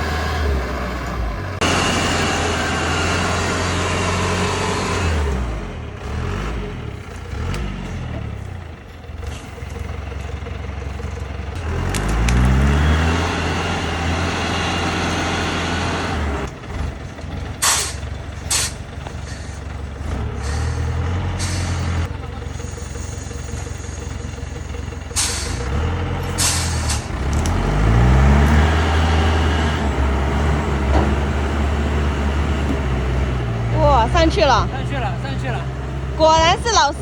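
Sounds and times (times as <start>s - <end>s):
truck engine revving hard: 0.0s - 8.4s, 11.5s - 22.1s, 25.1s - 37.0s
air brake hisses: 17.6s - 19.6s, 20.4s - 22.0s, 25.2s - 25.7s, 26.3s - 27.1s.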